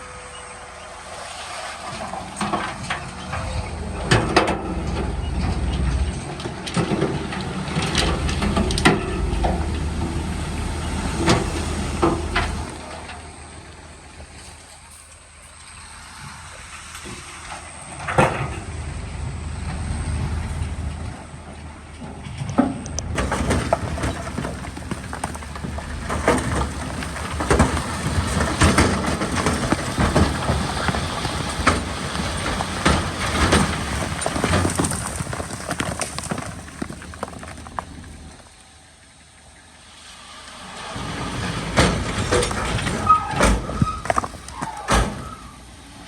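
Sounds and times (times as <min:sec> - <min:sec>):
bulldozer diesel engine rumble: 0:00.0 - 0:46.0
steel tracks clattering: 0:21.3 - 0:38.6, 0:40.9 - 0:45.6.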